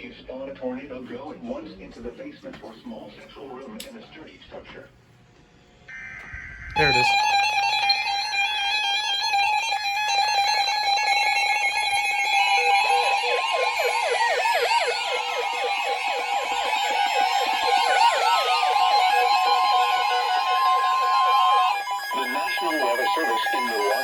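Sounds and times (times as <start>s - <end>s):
steady alarm tone: 5.8s - 24.0s
electronic beeping alarms: 5.9s - 8.7s, 9.5s - 24.0s.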